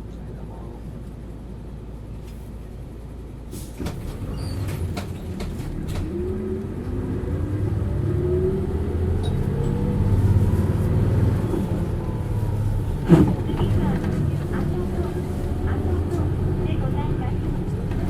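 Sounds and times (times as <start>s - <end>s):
bus diesel engine accelerating: 0.0s - 18.0s
sharp knocks and rattles: 3.9s - 6.2s
rising engine whine: 4.2s - 18.0s.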